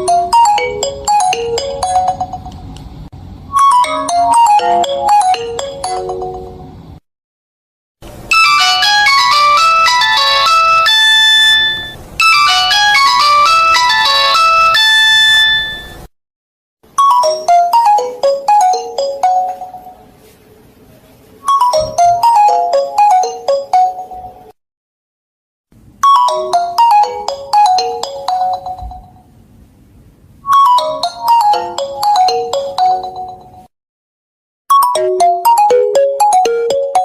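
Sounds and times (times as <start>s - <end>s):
plucked ringtone notes: 0.0s - 2.6s, 3.5s - 6.7s, 8.3s - 16.1s, 17.0s - 20.1s, 21.4s - 24.5s, 26.0s - 29.2s, 30.5s - 33.7s, 34.7s - 37.0s
high-pitched ringtone melody: 0.0s - 2.7s, 3.5s - 6.8s, 8.3s - 16.1s, 17.0s - 20.2s, 21.4s - 24.6s, 26.0s - 29.2s, 30.4s - 33.7s, 34.7s - 37.0s.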